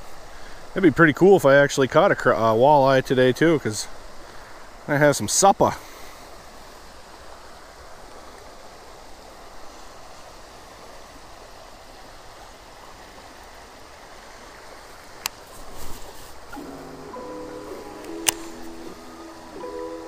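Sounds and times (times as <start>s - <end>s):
river water running over rocks: 0.0s - 20.0s
sharp click: 18.0s - 18.7s.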